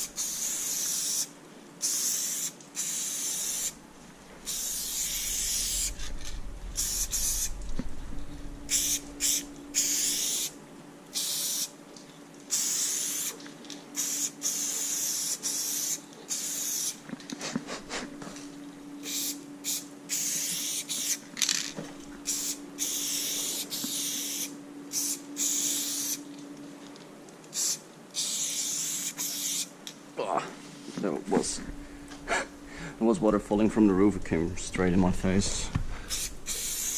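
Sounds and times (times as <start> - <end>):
spray paint can hissing: 0.0 - 3.8, 4.4 - 6.1, 6.8 - 7.5, 8.7 - 11.7, 12.5 - 13.4, 14.0 - 17.0, 19.0 - 21.2, 22.2 - 26.2, 27.5 - 29.7, 36.1 - 36.9
faint steady hum: 0.0 - 36.9.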